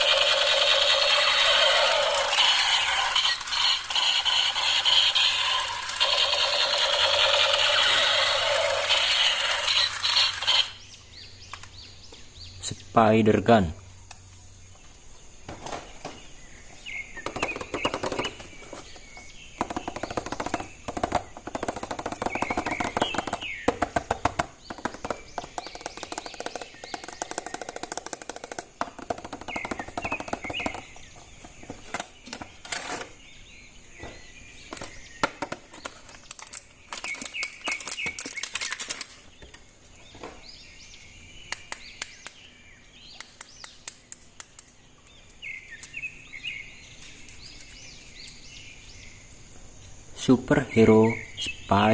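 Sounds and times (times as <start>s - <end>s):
plastic toy parts clicking: 0.0s - 10.8s, 35.4s - 39.2s
short birdlike chirps: 0.0s - 11.8s.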